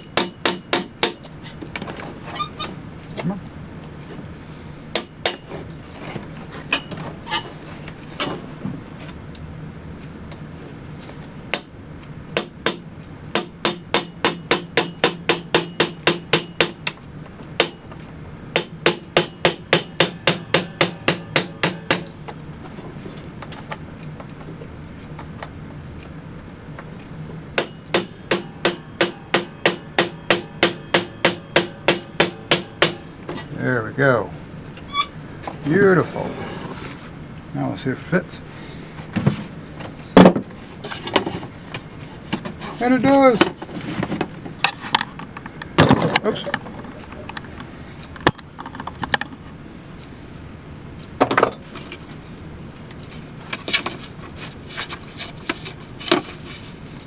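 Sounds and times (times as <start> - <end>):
low steady hum: 0.0 - 57.0
hammer tapping nails: 13.4 - 17.0, 18.6 - 22.1.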